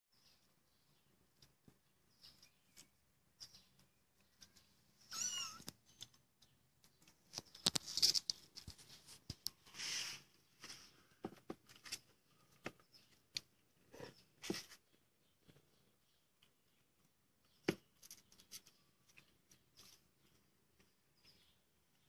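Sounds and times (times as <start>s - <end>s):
kitten mewing: 5.1s - 5.7s
small clicks and scuffs: 5.5s - 13.6s.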